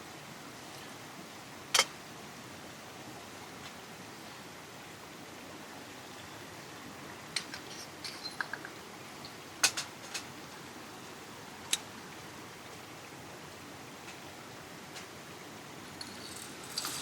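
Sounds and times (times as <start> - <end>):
coffee gear clicking and clinking: 15.9 - 17.0.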